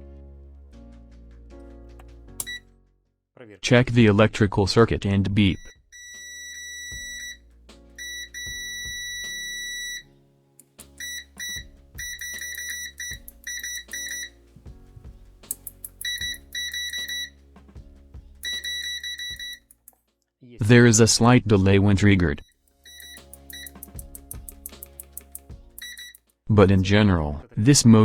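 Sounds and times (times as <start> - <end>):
background music: 0.0 - 3.0, 5.5 - 26.3
multimeter continuity buzzer beeping: 5.6 - 7.4, 8.0 - 10.0, 11.0 - 14.3, 16.0 - 17.3, 18.4 - 19.6, 22.9 - 24.2, 25.8 - 26.2.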